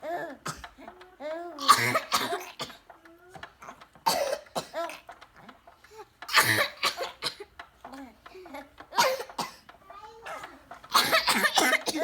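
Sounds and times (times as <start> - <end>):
boy coughing: 1.6 - 2.8, 4.1 - 5.0, 6.3 - 7.5, 8.9 - 12.0.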